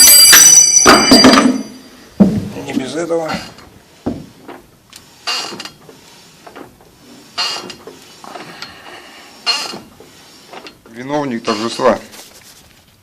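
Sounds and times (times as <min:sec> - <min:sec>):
short metallic creaks: 0:04.5 - 0:12.1.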